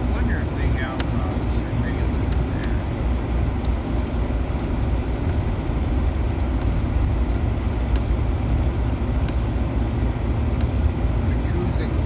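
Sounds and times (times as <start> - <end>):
engine and road noise in cab: 0.0 - 12.0.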